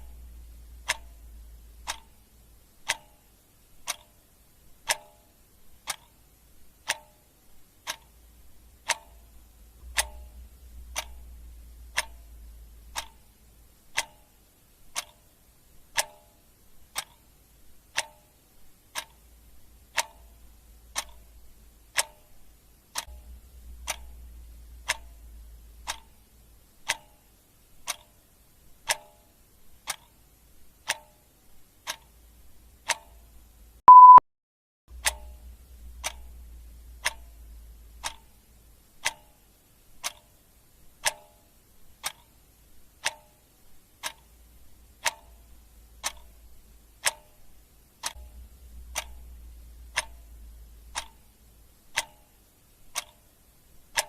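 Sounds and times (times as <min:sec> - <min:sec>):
clock ticking: 0:00.0 - 0:34.2, 0:34.9 - 0:54.0
short loud beep: 0:33.9 - 0:34.2.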